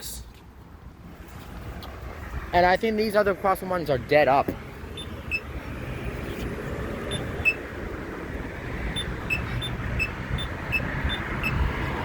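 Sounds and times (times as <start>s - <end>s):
road traffic rumble: 0.0s - 12.0s
crosswalk signal beeps: 4.9s - 5.6s, 7.0s - 7.7s, 8.9s - 11.8s.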